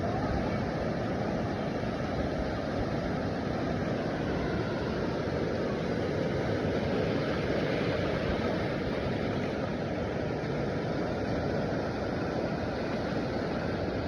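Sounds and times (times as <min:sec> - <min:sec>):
ocean waves breaking: 0:00.0 - 0:14.0.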